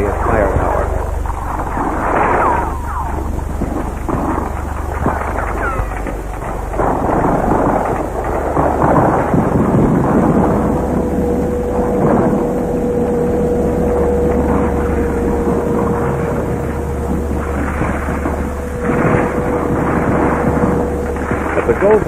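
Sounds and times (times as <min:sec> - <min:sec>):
muffled gunfire and explosions: 0:00.0 - 0:10.5
steady hum tone: 0:00.0 - 0:22.0.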